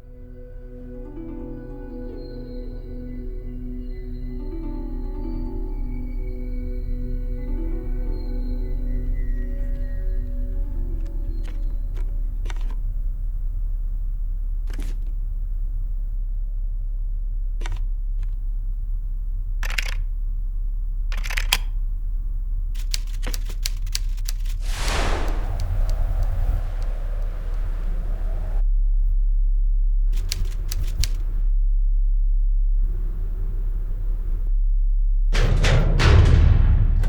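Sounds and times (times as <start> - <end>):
steady low hum: 2.6 - 37.0
sharp clicks: 19.6 - 20.1, 21.1 - 21.7, 22.8 - 28.3, 30.2 - 31.2
short hissy bursts: 24.6 - 28.6
deep low rumble: 24.6 - 37.0.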